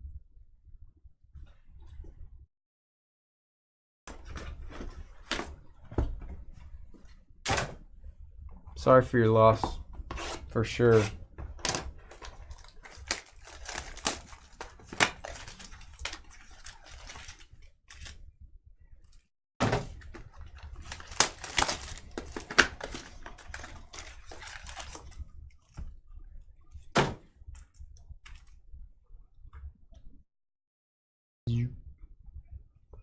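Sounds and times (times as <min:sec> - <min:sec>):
wrapper tearing and crinkling: 0:11.7 - 0:18.2, 0:20.5 - 0:25.2
cardboard clicks and knocks: 0:27.0 - 0:27.3.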